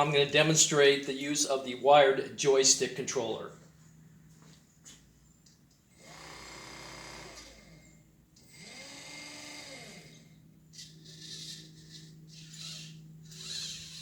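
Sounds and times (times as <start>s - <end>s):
electric motor whine: 6.0s - 14.0s.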